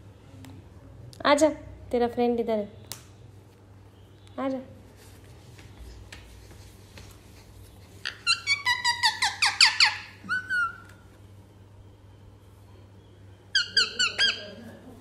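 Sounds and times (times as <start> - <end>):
parrot calling: 8.0 - 11.0, 13.5 - 14.8.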